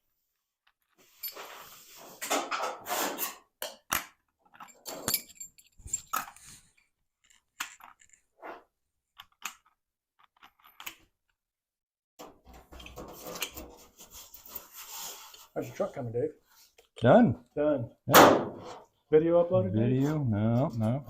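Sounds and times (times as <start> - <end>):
metal parts and tools clinking: 0.9 - 8.3, 9.2 - 11.1.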